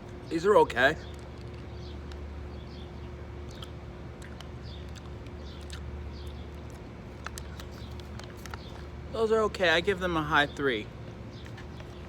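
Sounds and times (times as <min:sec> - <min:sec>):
steady low hum: 0:00.0 - 0:12.0
person chewing candy: 0:03.4 - 0:09.0.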